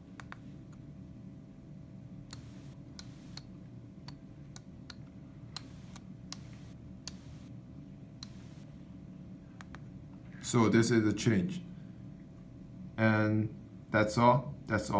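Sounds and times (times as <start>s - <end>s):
low steady hum: 0.0s - 14.9s
small switches clicking: 2.3s - 3.5s, 4.1s - 7.5s, 8.2s - 8.6s.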